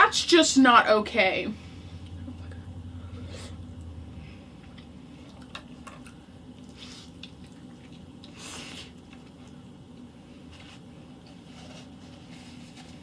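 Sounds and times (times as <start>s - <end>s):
steady low hum: 0.0s - 13.0s
chewing mouth clicks and smacks: 4.7s - 8.4s.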